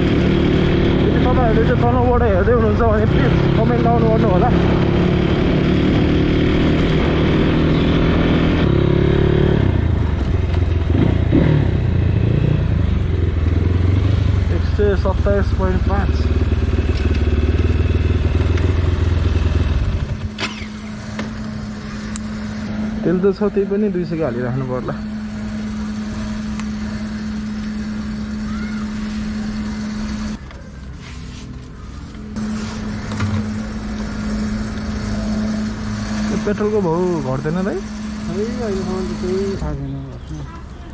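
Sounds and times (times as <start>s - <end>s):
motorcycle engine running: 0.0s - 40.9s
motor humming: 20.2s - 39.8s.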